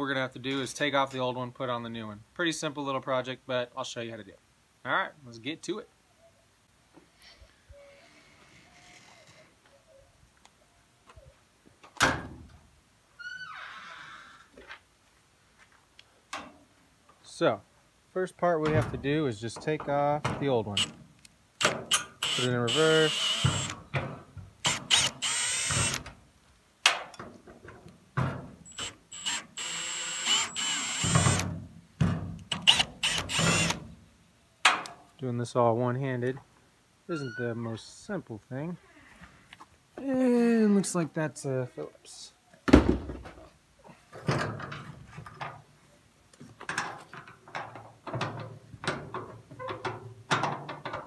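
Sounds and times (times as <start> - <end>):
power drill running in reverse: 22.2 - 23.7, 28.7 - 31.4.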